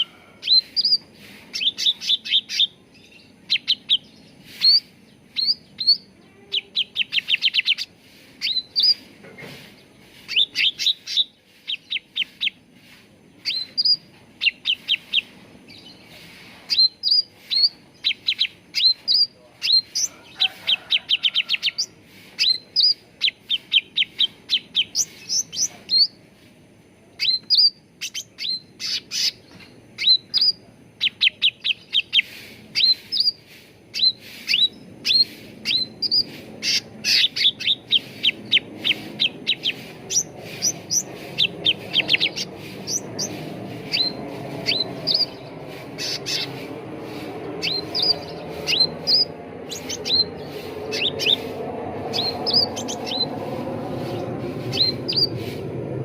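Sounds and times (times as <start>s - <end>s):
bird chirping and whistling: 0.0s - 9.0s, 10.3s - 12.6s, 13.4s - 16.0s, 16.7s - 20.1s, 21.7s - 26.2s, 27.2s - 46.6s, 47.6s - 53.4s, 54.1s - 55.5s.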